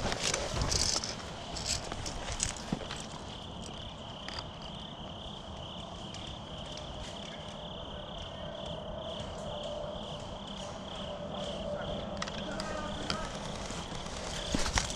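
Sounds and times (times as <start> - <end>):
light crunches: 0.0 - 4.4, 12.6 - 14.9
crickets chirping: 0.0 - 14.9.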